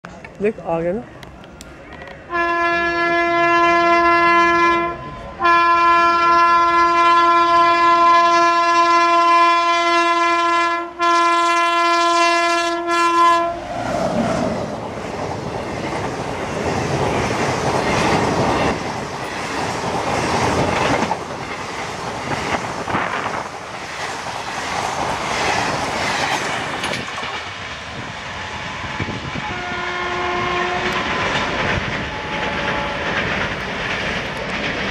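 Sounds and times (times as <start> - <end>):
locomotive horn blasts: 2.3 - 13.6, 28.5 - 31.2, 32.1 - 33.2
train coaches rushing past: 12.1 - 34.9.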